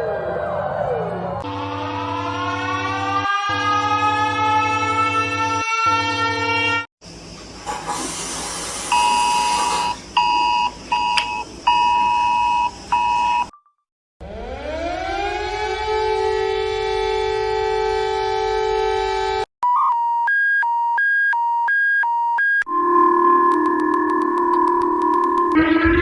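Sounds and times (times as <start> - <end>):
siren winding up: 0.8 - 6.9, 14.2 - 18.4, 19.6 - 26.0
hiss: 7.6 - 10.0.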